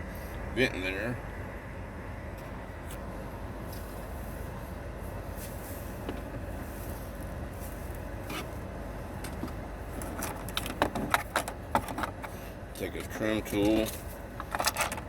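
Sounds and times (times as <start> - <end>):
steady low rumble: 0.0 - 14.9.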